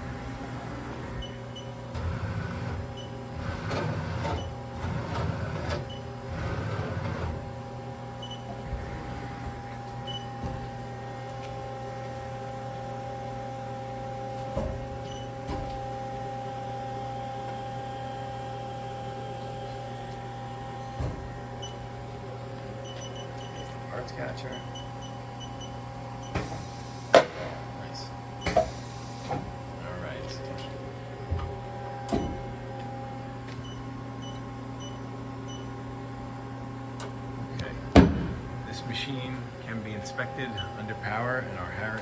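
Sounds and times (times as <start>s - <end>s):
machine low hum: 0.0s - 42.0s
uneven mechanical noise: 17.1s - 42.0s
short mechanical clunks: 26.2s - 27.6s, 31.3s - 32.5s, 37.0s - 38.6s
lathe machine whine: 38.5s - 42.0s.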